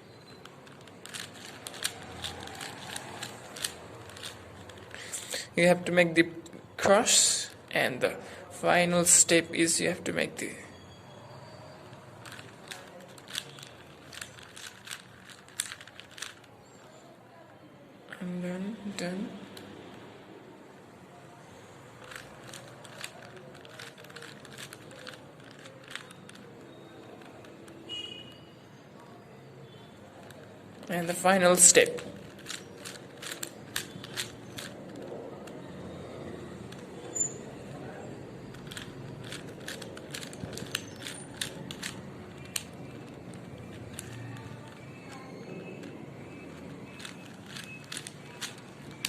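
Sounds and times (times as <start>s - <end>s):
puzzle cube twisting clicks: 0.3s - 5.5s, 12.2s - 16.8s, 22.0s - 28.4s, 30.2s - 49.0s.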